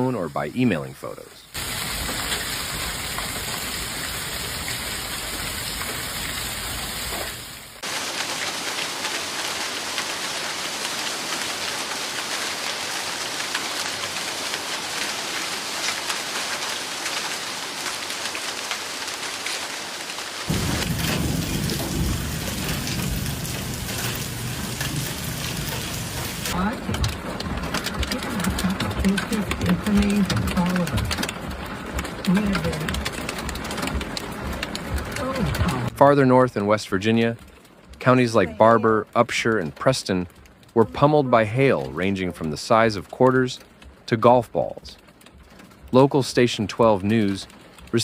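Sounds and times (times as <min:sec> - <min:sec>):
heavy rain pounding: 0:01.5 - 0:48.0
deep rumble: 0:20.5 - 0:36.0.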